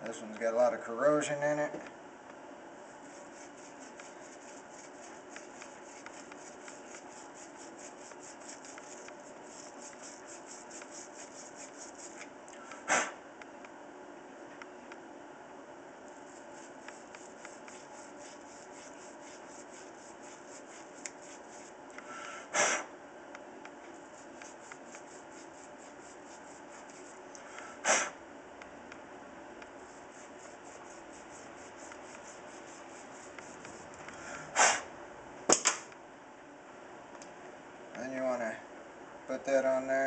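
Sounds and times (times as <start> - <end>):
quiet rubbing: 2.8 - 12.3, 16.1 - 21.8, 29.7 - 34.5.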